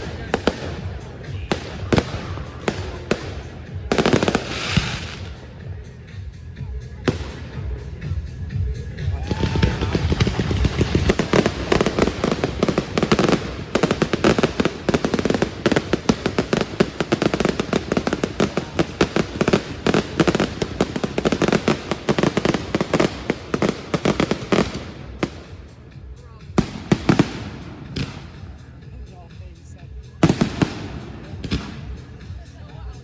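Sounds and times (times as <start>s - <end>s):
fireworks crackling bangs: 0.0s - 5.4s, 9.3s - 25.9s.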